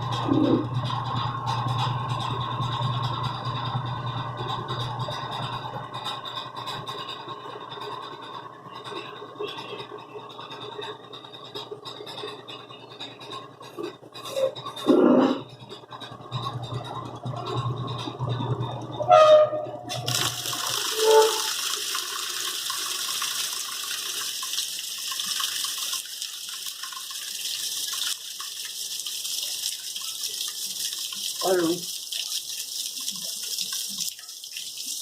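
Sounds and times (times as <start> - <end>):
washing machine motor hum: 0.0 - 35.0
water gushing into tub: 19.9 - 35.0.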